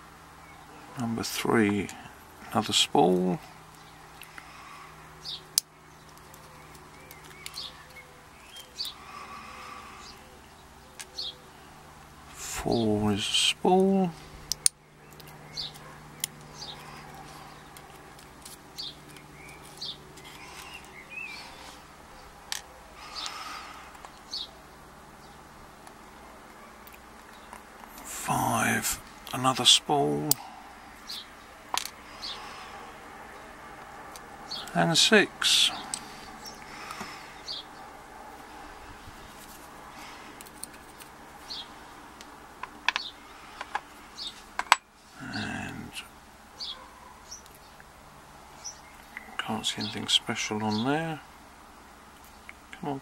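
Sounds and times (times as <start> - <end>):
steady low hum: 0.0 - 53.0
bird chirping: 5.1 - 11.8, 12.6 - 33.5, 34.4 - 42.1, 42.8 - 44.5, 45.2 - 47.9, 48.5 - 50.9
small bird chirping: 5.2 - 11.7, 14.5 - 22.4, 35.7 - 37.9, 40.8 - 42.0, 43.0 - 44.4
small metal clicks and taps: 14.5 - 16.5.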